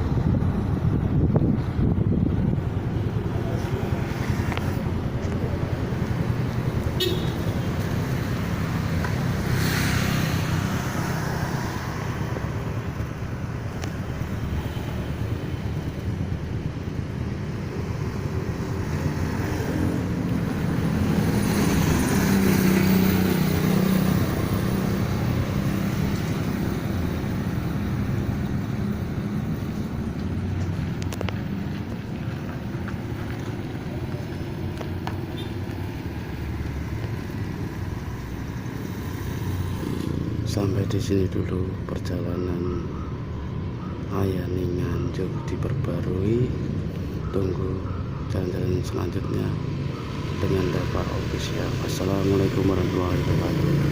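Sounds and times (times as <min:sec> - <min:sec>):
tyre and road noise: 0:00.0 - 0:53.9
vehicle engines running: 0:00.0 - 0:53.9
vehicles passing: 0:00.0 - 0:53.9.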